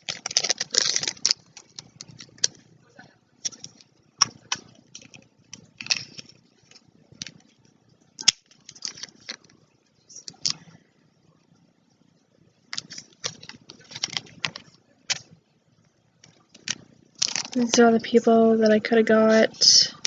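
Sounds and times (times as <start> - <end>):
plastic bag crinkling and rustling: 0.0 - 2.7, 8.2 - 9.6, 12.7 - 15.4, 16.2 - 18.0.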